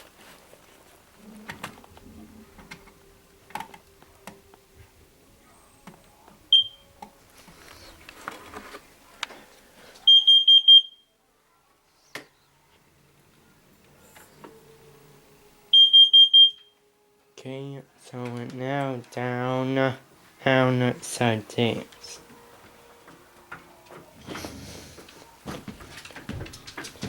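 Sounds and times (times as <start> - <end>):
high-pitched alarm beeps: 6.5 - 6.9, 10.1 - 11.1, 15.7 - 16.8
alarm chirp: 6.5 - 7.0, 10.0 - 11.1, 15.7 - 16.8
knocks and handling noises: 21.9 - 27.0.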